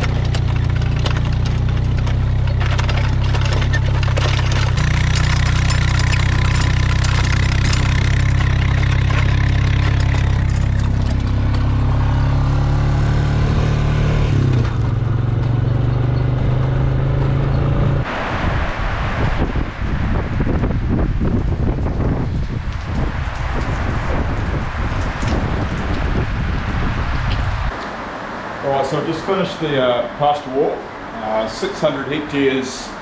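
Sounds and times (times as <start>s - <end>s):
farm vehicle engine running: 0.0s - 18.2s
wind noise: 0.0s - 28.9s.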